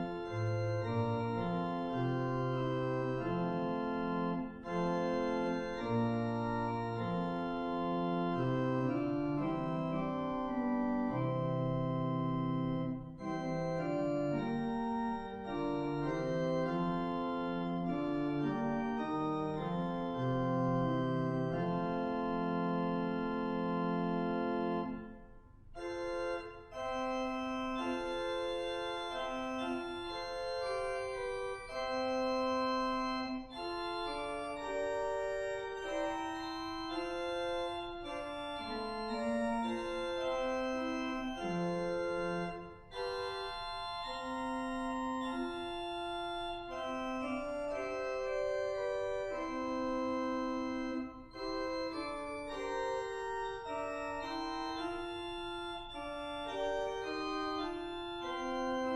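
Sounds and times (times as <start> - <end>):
slow organ music: 0.0 - 58.9.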